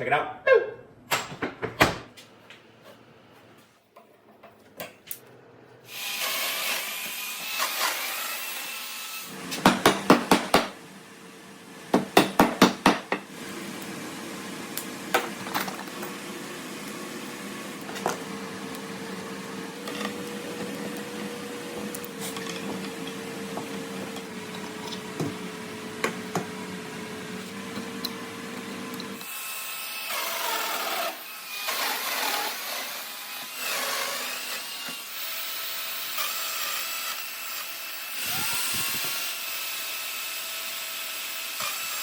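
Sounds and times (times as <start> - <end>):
power tool running: 5.9 - 12.5, 28.6 - 42.0.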